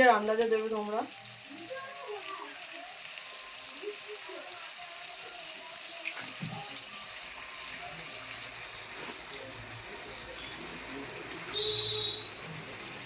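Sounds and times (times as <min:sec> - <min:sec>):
vegetables sizzling in a pan: 0:00.0 - 0:13.0.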